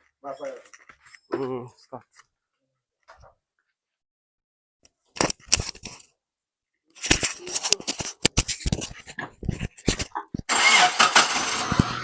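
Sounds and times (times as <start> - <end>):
car engine cranking: 10.5 - 12.0.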